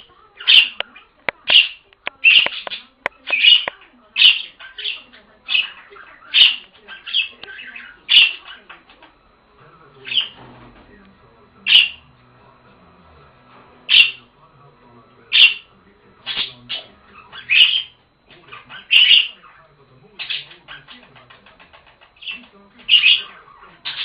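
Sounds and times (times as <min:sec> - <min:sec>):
budgerigars calling: 0:00.0 - 0:09.2, 0:10.0 - 0:10.4, 0:11.6 - 0:12.0, 0:13.9 - 0:14.3, 0:15.2 - 0:24.0
budgerigars chattering: 0:00.0 - 0:09.2, 0:10.0 - 0:10.4, 0:11.6 - 0:12.1, 0:13.9 - 0:14.4, 0:15.2 - 0:24.0.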